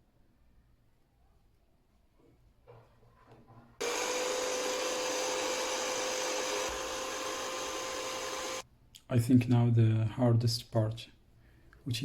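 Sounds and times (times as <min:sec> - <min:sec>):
electric air blower whining: 0:03.8 - 0:08.6.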